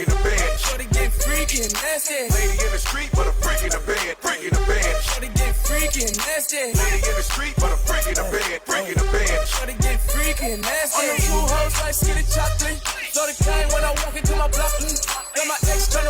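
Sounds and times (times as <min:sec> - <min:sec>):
hip hop beat: 0:00.0 - 0:16.0
deep sub-bass notes: 0:11.2 - 0:14.8.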